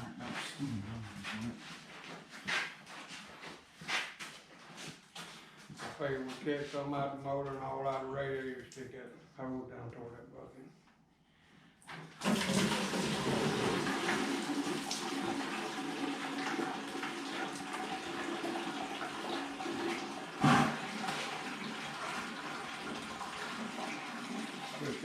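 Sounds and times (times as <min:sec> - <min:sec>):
liquid pouring into bucket: 0:11.9 - 0:25.0.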